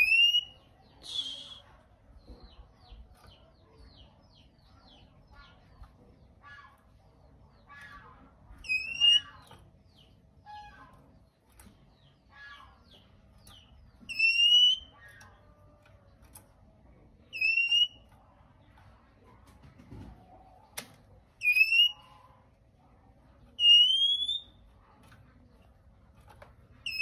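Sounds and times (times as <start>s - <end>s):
bird harsh chattering: 7.6s - 10.9s, 12.1s - 15.4s, 17.3s - 18.0s, 23.6s - 24.6s.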